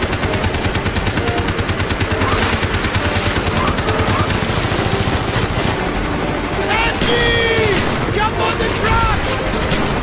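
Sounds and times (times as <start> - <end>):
rapid gunshot cracks: 7.0 - 8.1.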